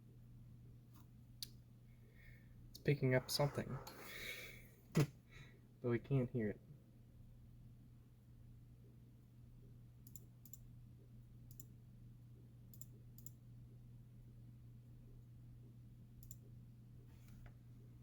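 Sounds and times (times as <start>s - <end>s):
faint low hum: 0.0s - 18.0s
computer mouse clicking: 10.0s - 10.7s, 11.5s - 11.7s, 12.7s - 13.4s, 16.2s - 16.5s.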